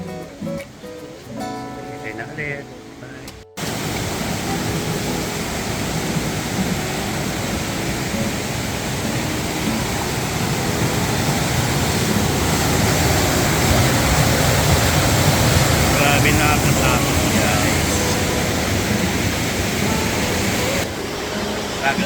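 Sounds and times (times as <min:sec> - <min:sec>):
rushing water: 0:00.0 - 0:22.0.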